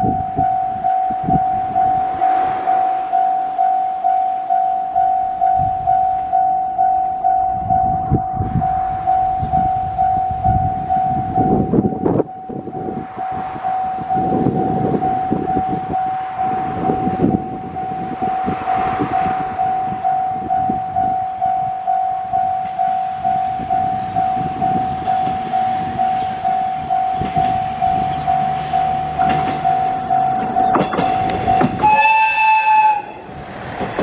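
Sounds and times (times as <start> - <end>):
level-crossing warning bell ringing: 0.0 - 33.4
diesel railcar engine hum: 0.0 - 34.0
train horn blast: 31.1 - 33.3.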